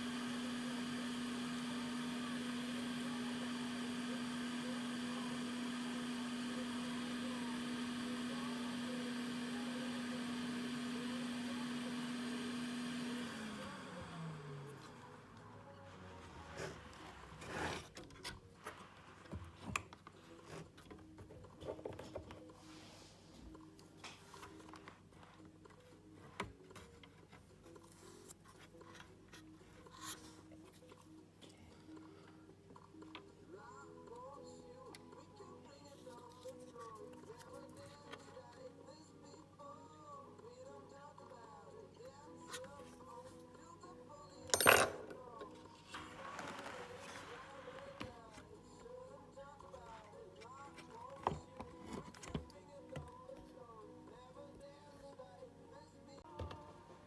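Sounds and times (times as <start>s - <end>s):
electric motor humming: 0.0s - 15.4s.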